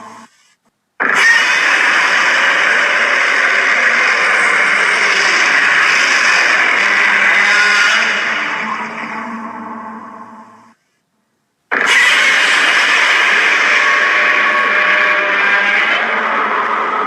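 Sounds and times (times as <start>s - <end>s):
monster roar: 1.0s - 9.3s, 11.7s - 17.0s.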